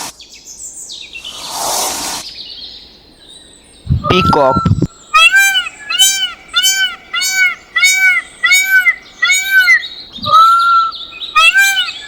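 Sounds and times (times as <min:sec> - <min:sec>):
peacock calling: 0:03.9 - 0:12.0.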